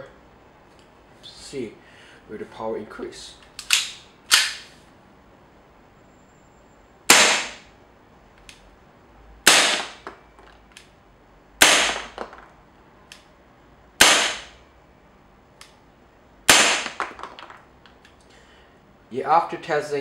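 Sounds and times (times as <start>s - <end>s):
airsoft gun shots: 7.1s - 7.7s, 9.5s - 10.1s, 11.6s - 12.4s, 14.0s - 14.6s, 16.5s - 17.2s.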